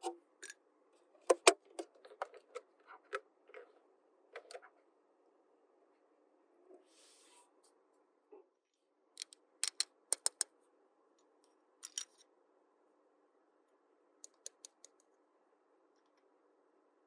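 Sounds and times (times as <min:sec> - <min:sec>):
plastic toy pieces clicking: 0:09.2 - 0:10.5, 0:14.2 - 0:15.0.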